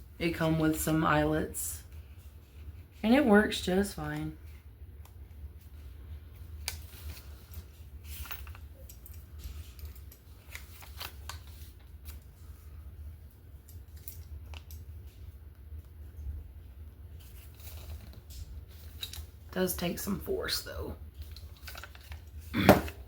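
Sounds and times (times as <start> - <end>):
steady low hum: 0.0 - 23.0
paper rustling: 6.4 - 12.7, 17.1 - 19.4, 21.1 - 22.5.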